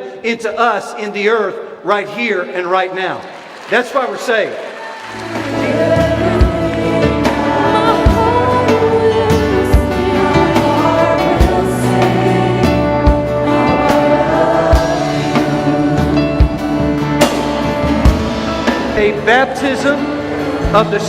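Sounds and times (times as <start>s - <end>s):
band playing: 2.1s - 21.0s
group of voices singing: 5.0s - 19.0s.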